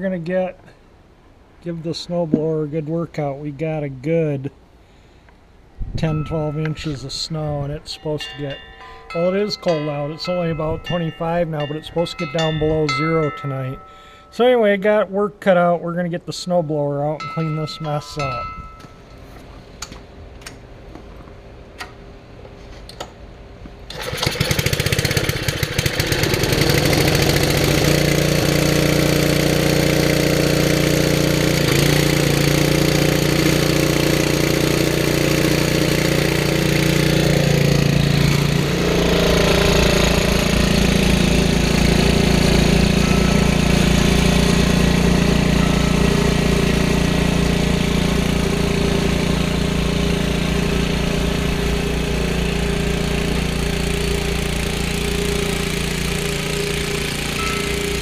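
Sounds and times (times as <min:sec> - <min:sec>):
snowblower engine running: 0:06.0 - 0:14.4, 0:17.2 - 0:19.0, 0:23.9 - 0:58.0.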